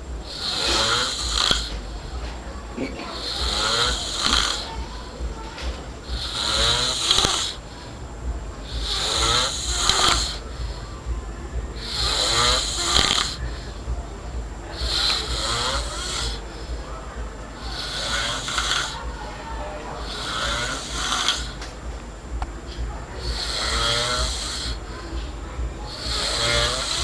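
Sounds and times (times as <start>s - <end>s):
person snoring: 0.2s - 1.8s, 2.7s - 5.2s, 6.0s - 7.6s, 8.6s - 10.8s, 11.8s - 13.8s, 14.7s - 16.8s, 17.6s - 19.1s, 20.0s - 21.6s, 23.2s - 24.8s, 25.9s - 27.0s.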